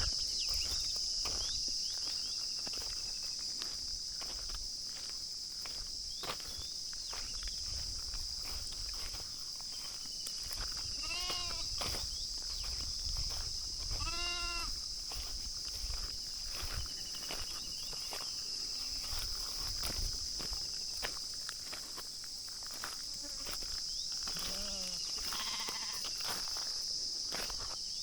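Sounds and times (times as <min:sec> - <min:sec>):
high insect drone: 0:00.0 - 0:28.0
sheep bleating: 0:11.0 - 0:11.7, 0:14.0 - 0:14.7, 0:24.3 - 0:26.0.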